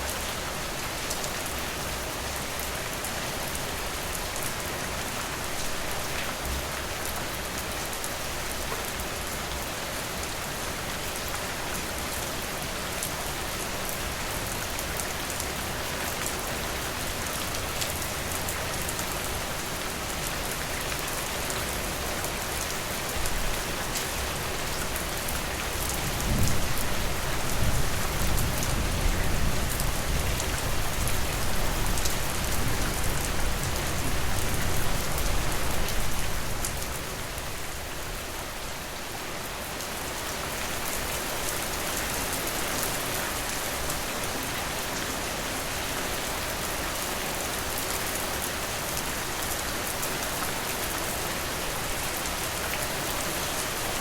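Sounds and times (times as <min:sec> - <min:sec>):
steady rain: 0:00.0 - 0:54.0
low rumble of thunder: 0:26.1 - 0:34.9.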